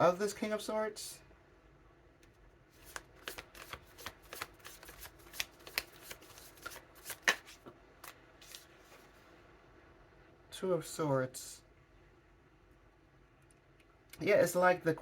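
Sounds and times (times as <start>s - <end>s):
cards being shuffled: 2.7s - 9.1s.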